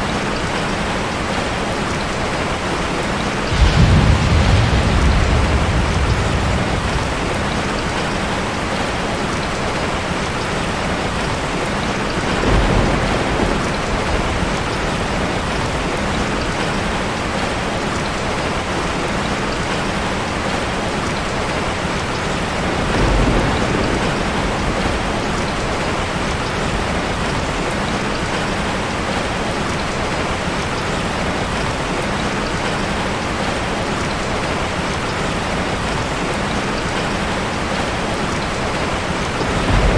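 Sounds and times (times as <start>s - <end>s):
heavy rain falling: 0.0s - 39.9s
low rumbles: 3.4s - 9.0s.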